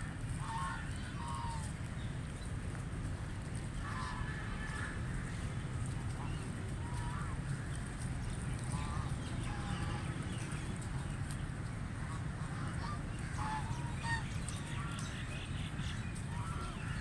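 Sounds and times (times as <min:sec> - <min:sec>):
low steady rumble: 0:00.0 - 0:17.0
ducks quacking: 0:00.2 - 0:01.7, 0:03.8 - 0:07.7, 0:08.6 - 0:11.2, 0:11.9 - 0:17.0.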